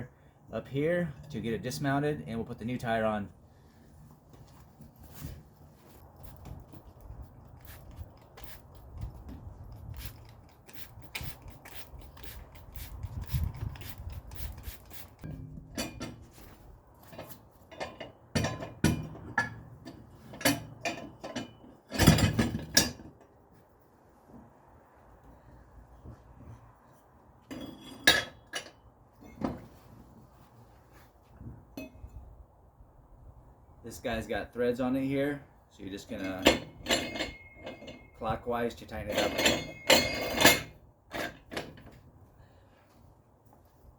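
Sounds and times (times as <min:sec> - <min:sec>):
tire scraping against tire changer: 0:03.7 - 0:17.9
metal clanks and clinks: 0:09.8 - 0:16.3, 0:17.1 - 0:23.2, 0:27.5 - 0:29.6, 0:36.1 - 0:41.9.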